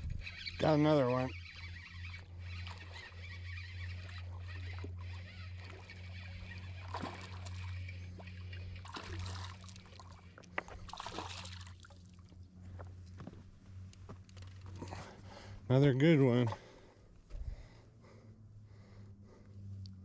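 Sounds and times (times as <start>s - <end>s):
low hum: 0.0s - 20.0s
water splashing: 3.8s - 12.2s.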